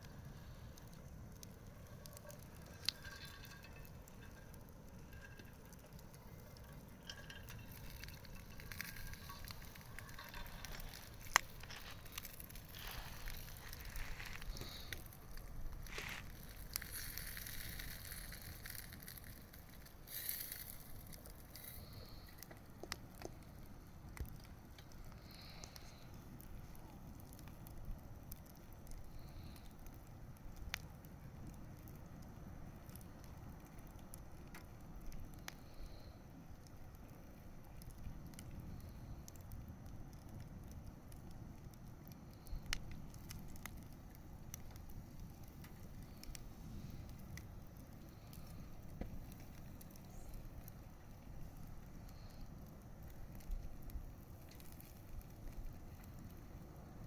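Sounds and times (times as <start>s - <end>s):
rush of flames: 0.0s - 57.0s
wood crackling and popping: 0.0s - 57.0s.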